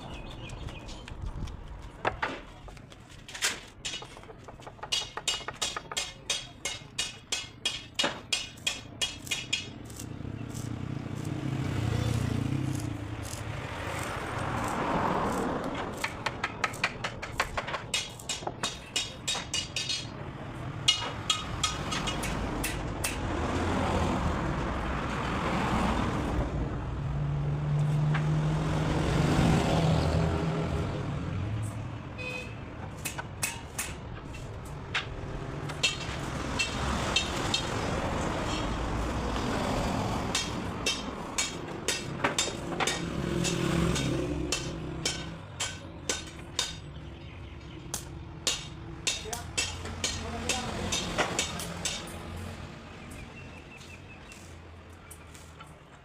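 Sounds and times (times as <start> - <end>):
vehicle engine and road noise: 0.0 - 56.0
hammering on wood: 3.8 - 9.8, 15.9 - 20.1, 20.8 - 23.2, 40.3 - 46.9, 48.0 - 52.2.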